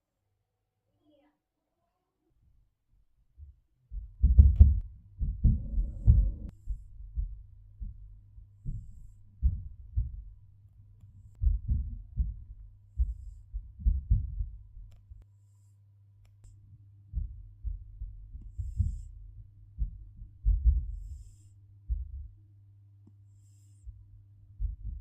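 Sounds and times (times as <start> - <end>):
faint steady hum: 4.0 - 25.0
cat snoring: 5.4 - 6.9, 8.6 - 9.3, 13.0 - 13.6, 15.2 - 15.8, 18.4 - 19.2, 20.8 - 21.6, 23.3 - 23.9.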